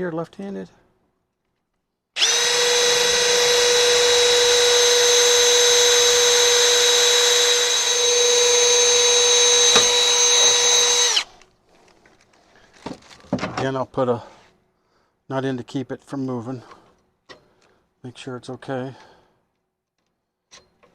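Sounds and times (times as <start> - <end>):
power tool motor whining: 2.2 - 11.4.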